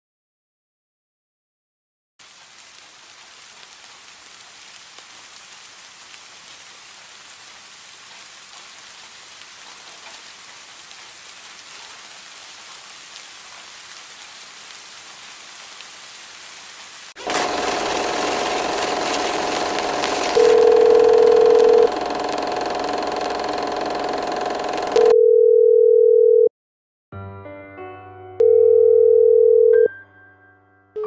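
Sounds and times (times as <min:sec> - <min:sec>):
steady rain falling: 0:02.2 - 0:25.1
loud steady tone: 0:17.2 - 0:25.2.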